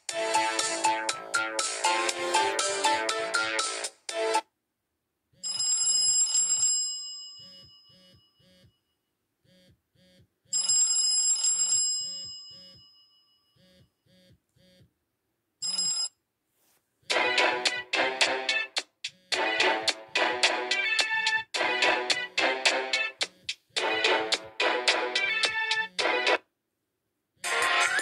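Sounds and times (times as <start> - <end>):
busy phone ringtone melody: 0.2 - 3.9, 5.4 - 8.6, 10.5 - 13.6, 15.6 - 16.2
phone ringtone chime and beeps: 0.3 - 3.8, 5.4 - 8.7, 10.6 - 13.7, 15.6 - 16.2.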